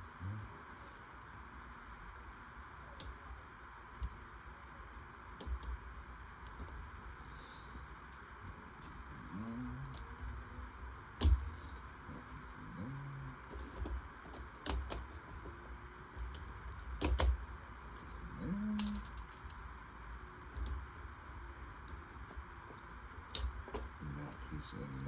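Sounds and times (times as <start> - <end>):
plastic pieces clicking together: 18.6 - 19.6.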